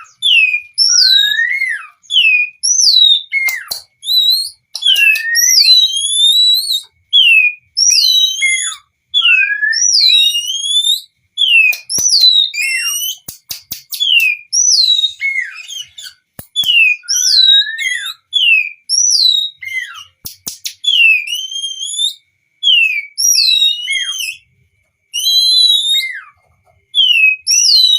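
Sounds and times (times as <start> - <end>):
bird singing whistled notes: 0.0 - 24.5, 25.1 - 27.9
sharp clicks: 4.7 - 5.4, 13.1 - 14.4, 16.0 - 16.8, 20.2 - 20.9.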